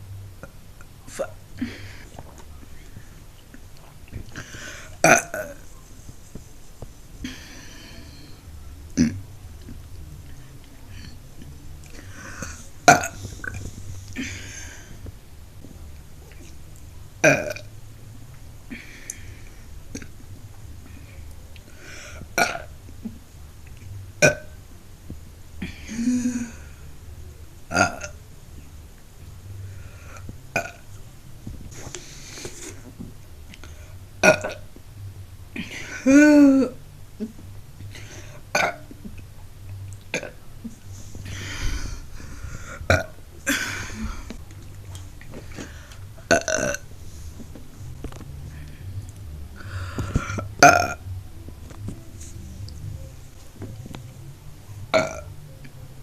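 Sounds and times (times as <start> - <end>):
woman burping: 5.0 - 5.6, 9.0 - 9.2, 12.3 - 13.6, 17.2 - 17.7, 22.4 - 22.7, 24.2 - 24.6, 27.7 - 28.2, 30.6 - 30.8, 34.2 - 34.7, 35.6 - 37.3, 38.5 - 38.9, 40.1 - 40.4, 42.8 - 44.4, 46.3 - 46.8, 50.2 - 51.0, 54.9 - 55.3.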